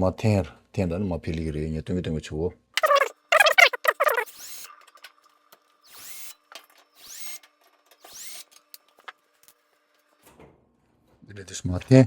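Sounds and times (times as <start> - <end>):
power drill spinning: 3.4 - 4.7.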